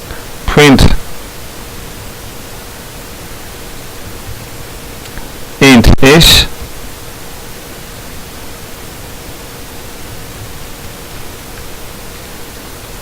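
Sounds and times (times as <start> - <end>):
faint steady hum: 0.0 - 13.0
steady hiss: 0.0 - 13.0.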